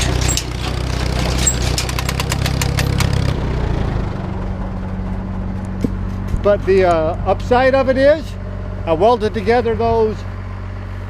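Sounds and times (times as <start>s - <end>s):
baler mechanism clattering: 0.0s - 3.3s
tractor engine running: 0.0s - 11.0s.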